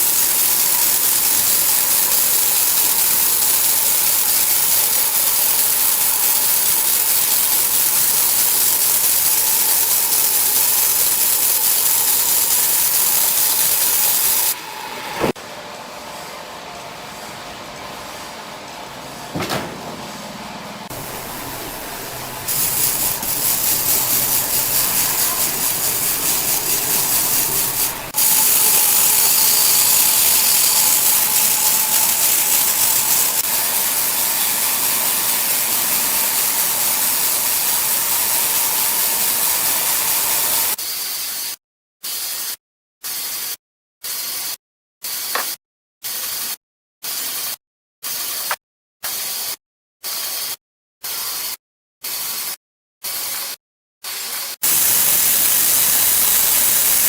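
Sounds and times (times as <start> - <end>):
sawmill machinery hiss: 0.0 - 15.4, 20.8 - 40.9, 54.1 - 57.0
faint machine whine: 14.6 - 40.7.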